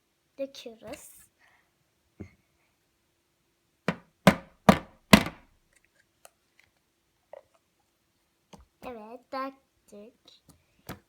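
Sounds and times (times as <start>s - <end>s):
loud knocks: 3.9s - 5.4s.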